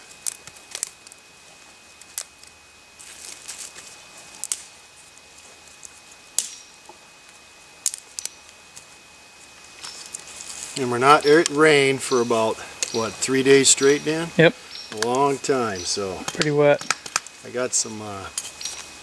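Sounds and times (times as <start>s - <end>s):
handling of twigs: 0.2s - 6.6s, 7.8s - 19.0s
twigs snapping: 3.1s - 4.7s, 5.8s - 6.7s, 7.8s - 8.9s, 14.7s - 15.3s, 16.2s - 17.4s.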